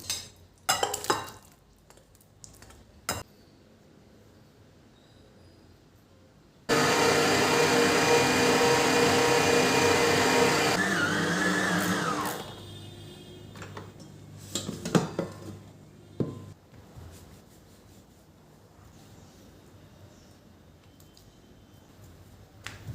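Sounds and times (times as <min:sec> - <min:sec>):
vacuum cleaner motor whining: 0:06.7 - 0:12.6.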